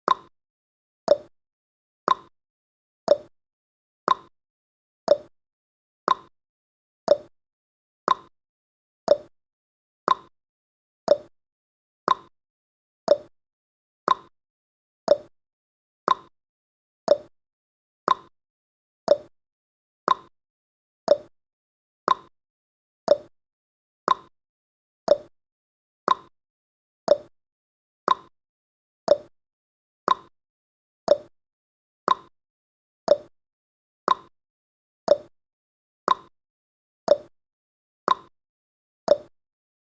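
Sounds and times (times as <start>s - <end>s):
clock ticking: 29.1s - 29.3s, 39.1s - 39.3s.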